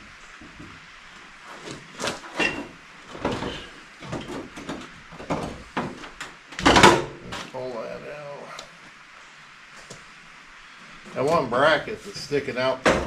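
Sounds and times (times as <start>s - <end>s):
short squeaks: 2.3s - 2.7s.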